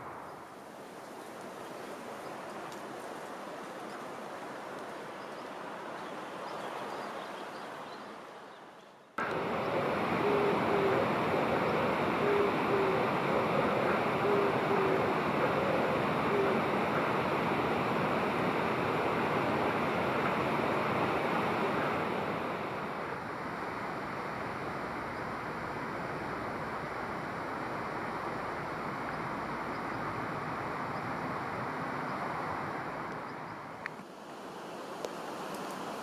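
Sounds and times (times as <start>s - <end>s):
faint clicks: 35.0s - 35.8s.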